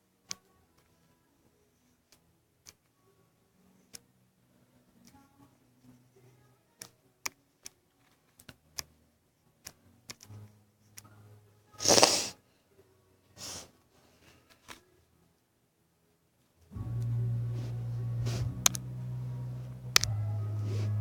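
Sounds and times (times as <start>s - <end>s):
person sneezing loudly: 11.8s - 12.4s
person sniffing: 11.8s - 12.4s, 13.4s - 13.7s, 17.5s - 18.7s.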